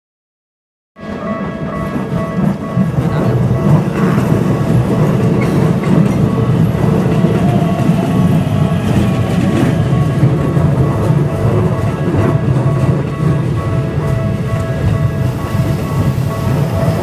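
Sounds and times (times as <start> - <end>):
train wheels rumbling on track: 1.0 - 17.0.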